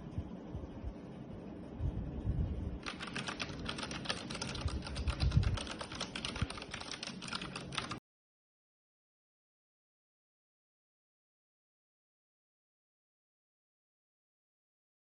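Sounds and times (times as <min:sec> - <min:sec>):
mechanical keyboard typing: 0:02.8 - 0:08.0.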